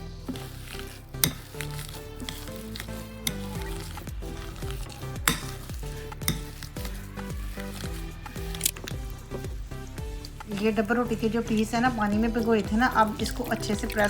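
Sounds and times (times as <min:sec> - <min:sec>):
background music: 0:00.0 - 0:14.0
potatoes squishing being mashed: 0:00.0 - 0:14.0
utensil clicking against bowl: 0:01.2 - 0:09.0.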